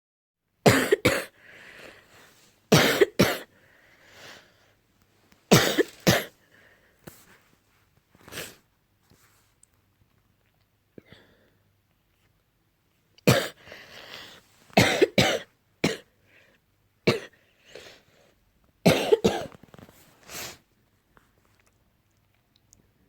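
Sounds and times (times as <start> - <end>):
person coughing: 0.7 - 1.4, 2.7 - 3.5, 5.5 - 6.3, 13.3 - 13.6, 14.8 - 16.1, 17.1 - 17.4, 18.9 - 19.6
drawn breaths: 1.4 - 2.5, 3.5 - 4.8.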